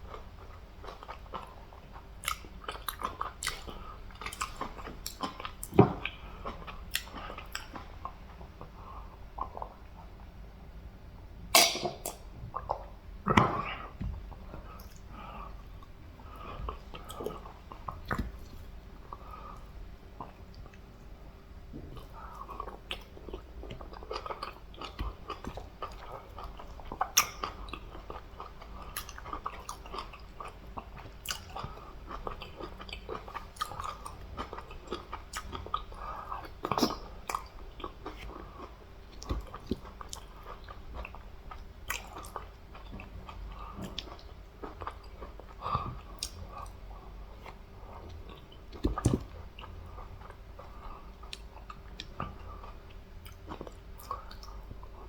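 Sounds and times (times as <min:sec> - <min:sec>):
wet chewing and smacking: 0:00.0 - 0:08.8, 0:21.8 - 0:55.0.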